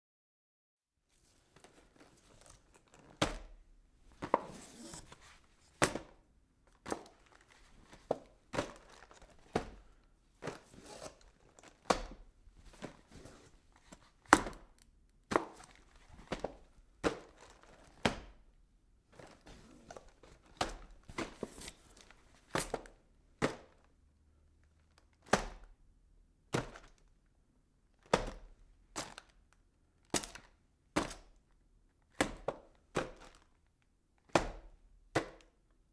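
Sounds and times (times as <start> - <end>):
rustling and scraping: 4.1 - 5.8, 10.5 - 11.8, 12.7 - 14.1.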